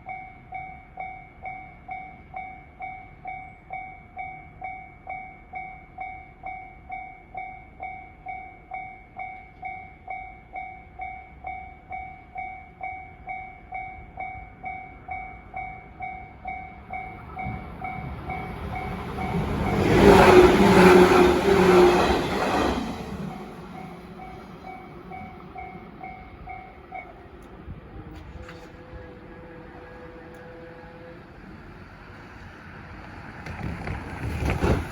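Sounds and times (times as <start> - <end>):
level crossing warning bell: 0.0 - 27.5
train passing: 0.0 - 34.9.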